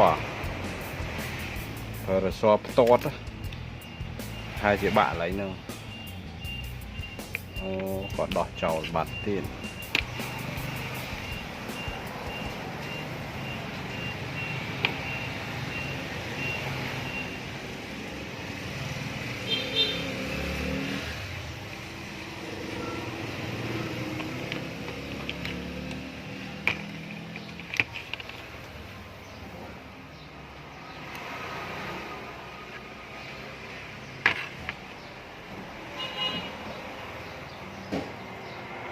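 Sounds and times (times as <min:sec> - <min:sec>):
vehicle engine rumble: 0:03.2 - 0:19.3
faint beeps: 0:03.5 - 0:17.4, 0:22.7 - 0:23.9.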